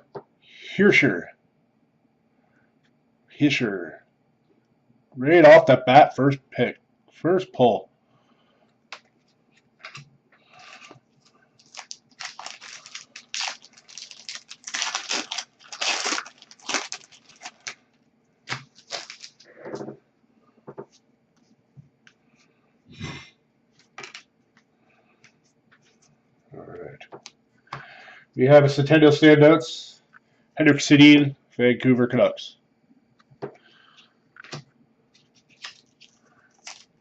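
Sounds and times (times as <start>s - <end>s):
cards and packaging rustling: 11.6s - 17.8s, 18.5s - 19.9s, 23.8s - 24.2s, 35.2s - 37.0s
scrapes and taps: 20.7s - 21.9s.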